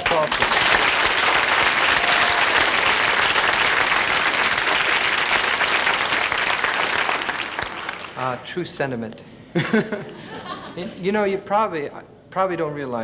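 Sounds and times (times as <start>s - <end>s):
audience applauding: 0.0s - 8.4s.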